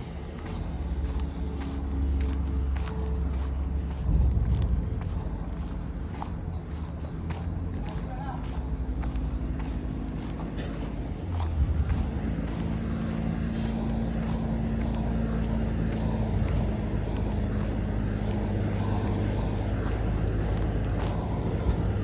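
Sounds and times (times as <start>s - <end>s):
heavy machinery engine humming: 0.0s - 22.0s.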